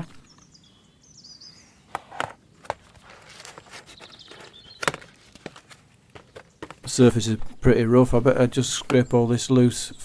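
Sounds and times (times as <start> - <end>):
bird chirping: 0.0 - 2.0, 3.5 - 5.4.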